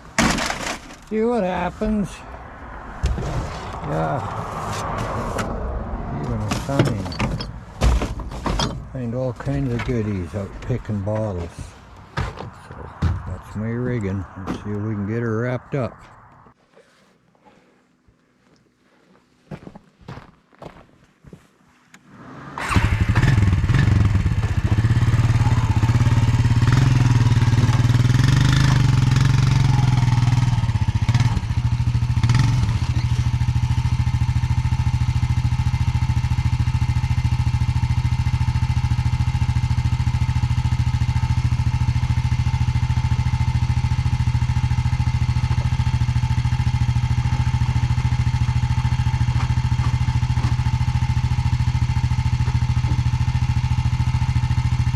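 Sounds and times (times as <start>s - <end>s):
vehicle engine starting and idling: 22.0s - 54.9s.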